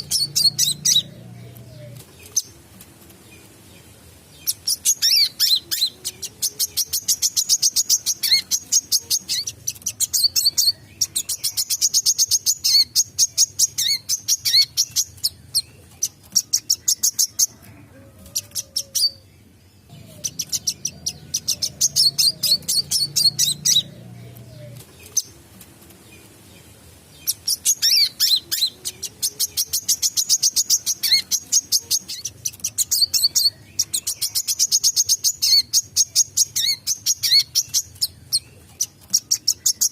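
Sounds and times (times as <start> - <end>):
sunbird singing fast high chirps: 0.0 - 1.2, 4.4 - 15.7, 19.9 - 24.5, 27.2 - 38.5.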